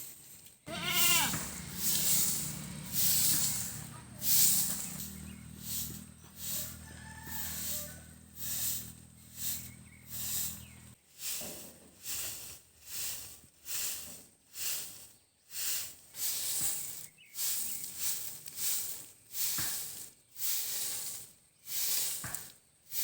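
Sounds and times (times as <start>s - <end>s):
rhythmic swishing scraping strokes: 1.0s - 11.0s.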